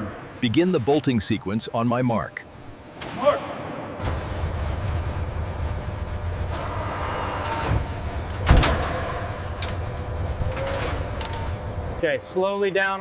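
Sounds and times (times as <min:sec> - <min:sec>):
low machinery rumble: 0:04.0 - 0:12.2.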